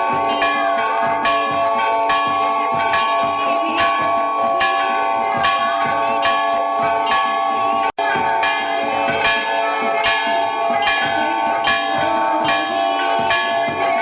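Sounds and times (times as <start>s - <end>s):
temple bells ringing: 0.0s - 14.0s.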